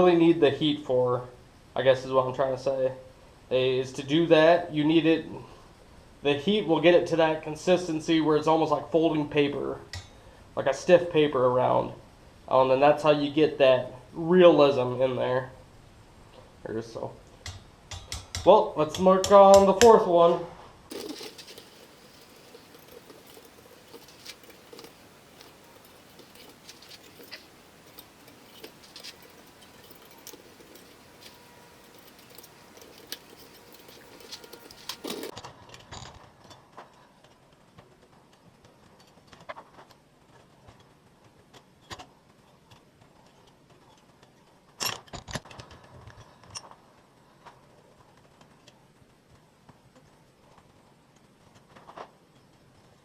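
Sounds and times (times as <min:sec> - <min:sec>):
metal tool clicks and taps: 0:17.4 - 0:18.5.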